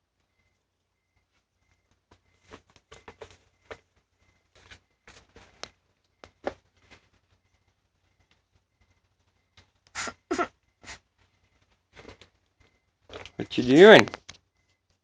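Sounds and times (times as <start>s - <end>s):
child fake coughing: 10.0s - 10.6s.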